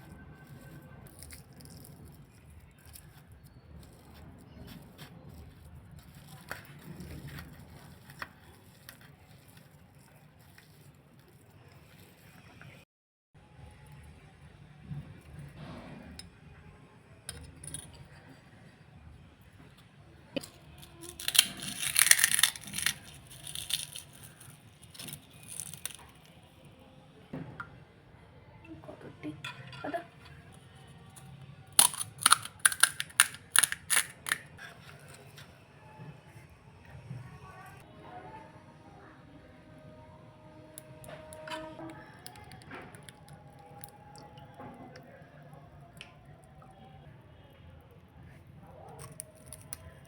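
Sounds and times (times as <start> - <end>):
crunching and rustling food: 0.0 - 12.8, 17.3 - 26.9, 30.1 - 37.9, 40.8 - 47.2, 47.8 - 50.0.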